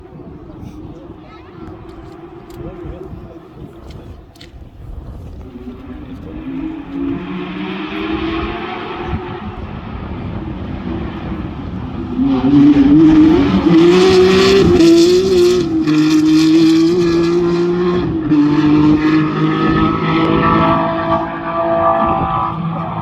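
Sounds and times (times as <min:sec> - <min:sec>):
rally car engine high revs: 0:05.4 - 0:23.0.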